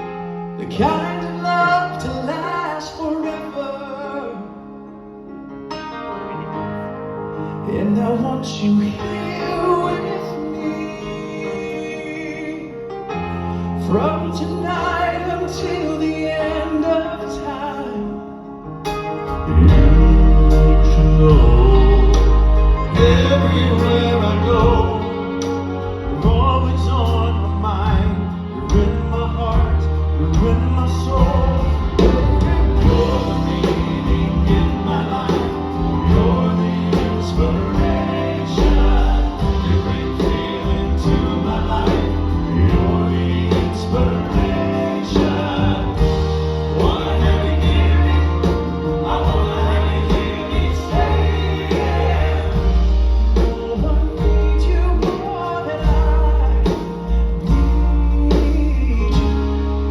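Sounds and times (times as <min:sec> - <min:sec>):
male group singing in harmony: 0:07.6 - 0:12.8, 0:13.4 - 0:18.2, 0:19.4 - 0:59.9
band with bass and drums: 0:18.8 - 0:59.9.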